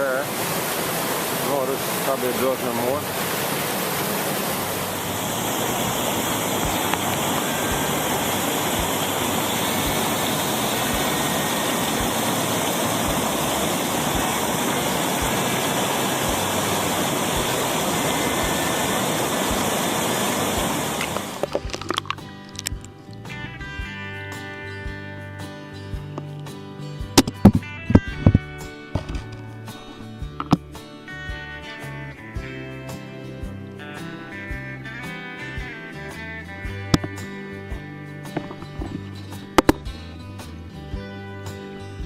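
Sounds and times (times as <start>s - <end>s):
river water rushing over falls: 0.0s - 22.1s.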